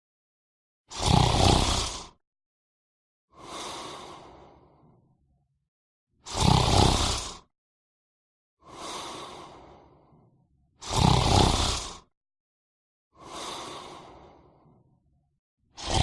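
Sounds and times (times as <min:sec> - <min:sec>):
person snoring: 0:00.9 - 0:02.2, 0:03.4 - 0:05.0, 0:06.2 - 0:07.5, 0:08.6 - 0:10.2, 0:10.8 - 0:12.2, 0:13.2 - 0:14.8, 0:15.8 - 0:16.0.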